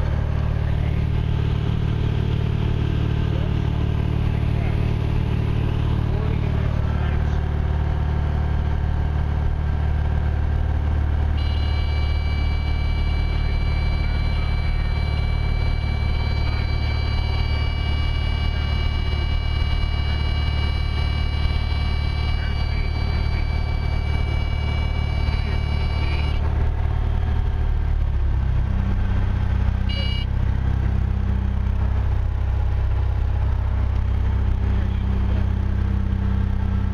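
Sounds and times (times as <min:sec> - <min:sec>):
airplane engine and propeller droning: 0:00.0 - 0:36.9
steady high-pitched tone: 0:11.2 - 0:26.5, 0:29.9 - 0:30.3.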